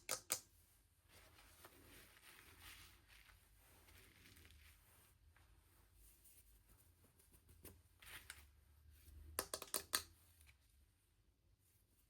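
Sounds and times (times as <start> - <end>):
soft rustling: 0.6 - 9.2.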